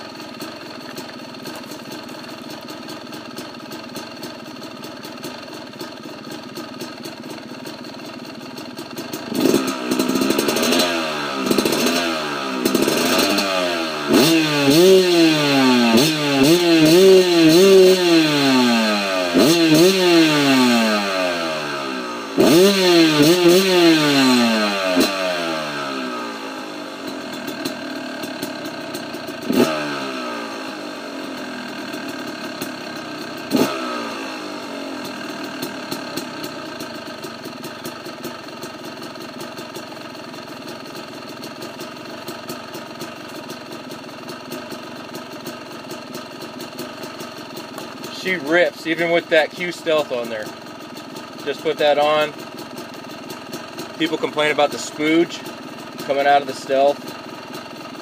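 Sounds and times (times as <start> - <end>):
dirt bike engine revving: 5.2 - 58.0.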